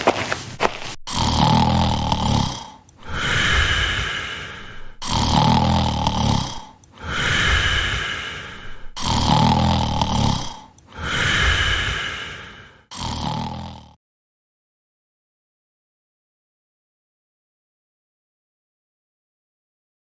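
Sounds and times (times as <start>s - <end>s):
cartoon snoring: 0.6s - 14.0s.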